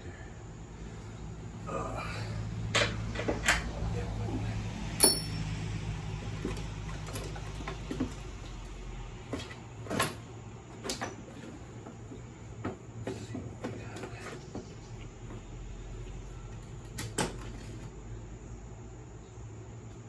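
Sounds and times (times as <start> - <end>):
low steady hum: 0.0 - 20.0
hand tools knocking on metal: 5.0 - 5.5
metal clank: 5.0 - 5.6.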